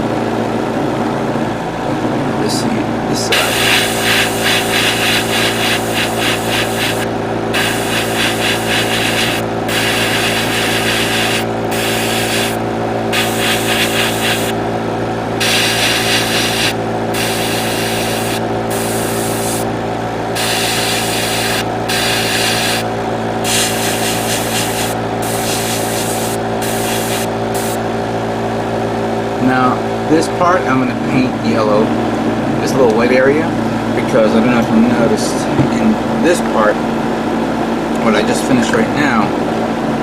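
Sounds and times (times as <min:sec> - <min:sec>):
air compressor humming: 0:00.0 - 0:34.3
airbrush spraying hiss: 0:03.3 - 0:14.6, 0:15.4 - 0:19.6, 0:20.4 - 0:22.8, 0:23.4 - 0:27.8.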